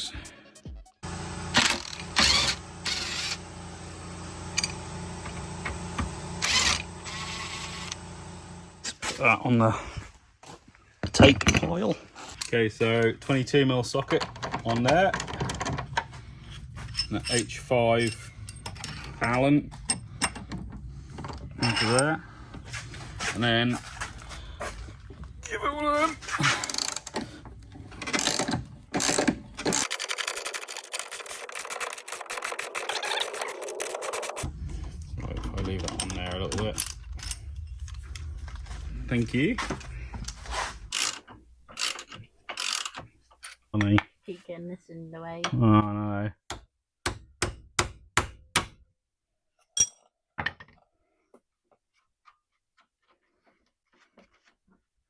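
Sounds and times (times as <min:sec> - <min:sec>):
tool rapid mechanical rattle: 0:01.0 - 0:08.9, 0:26.4 - 0:27.2, 0:28.0 - 0:34.5, 0:41.8 - 0:43.0.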